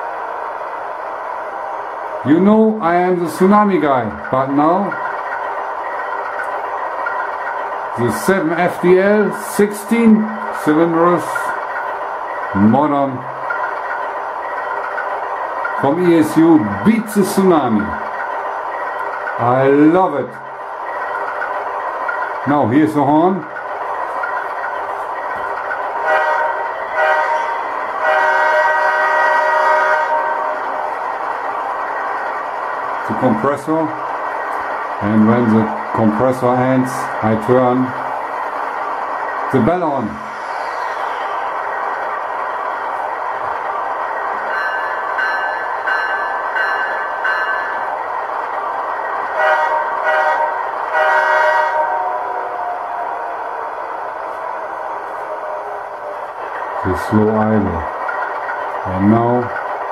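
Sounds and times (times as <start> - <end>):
diesel engine sound: 0.0 - 59.9
locomotive air horn blasts: 26.0 - 30.6, 49.4 - 52.2
locomotive bell ringing: 44.5 - 47.9.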